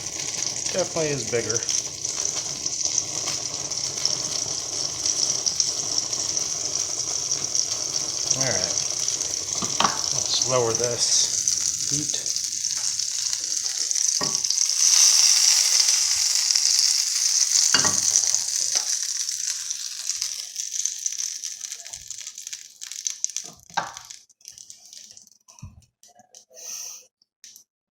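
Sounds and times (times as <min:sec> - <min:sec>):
egg sizzling in a pan: 0:00.0 - 0:27.0.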